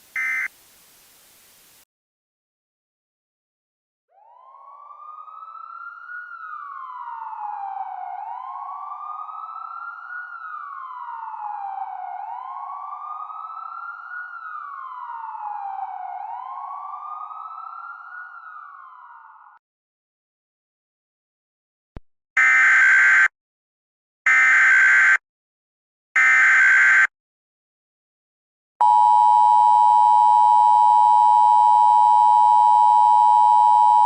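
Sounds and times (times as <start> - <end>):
siren wailing: 22.4 - 23.3, 24.3 - 25.2, 26.2 - 27.1.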